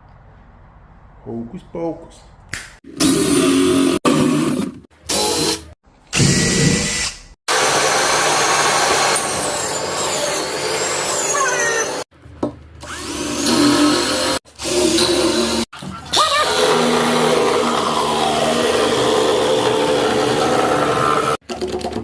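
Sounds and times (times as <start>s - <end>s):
drill running: 3.0s - 12.0s, 12.8s - 15.6s, 16.4s - 21.4s.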